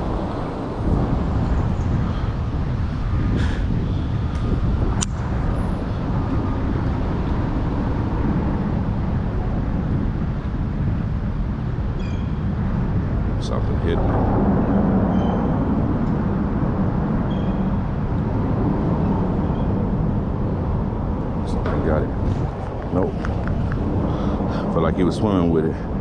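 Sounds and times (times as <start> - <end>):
road traffic rumble: 0.0 - 26.0.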